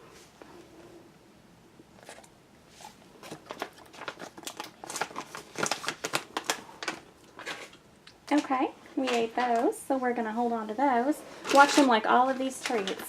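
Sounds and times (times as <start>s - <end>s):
dog crunching treats: 2.0s - 2.4s, 3.2s - 7.8s.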